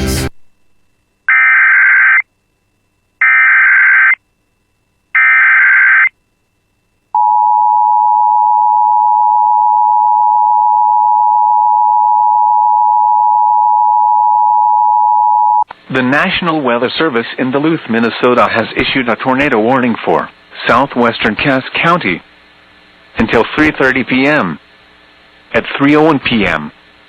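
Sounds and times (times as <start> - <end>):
steady attention tone: 1.0 - 20.9
harsh digital data tones: 1.3 - 2.2, 3.2 - 4.2, 5.2 - 6.1.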